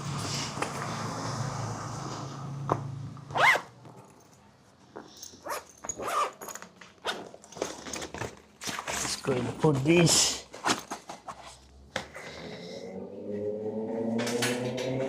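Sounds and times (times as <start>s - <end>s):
zipper being pulled: 3.3s - 3.7s, 5.2s - 8.0s.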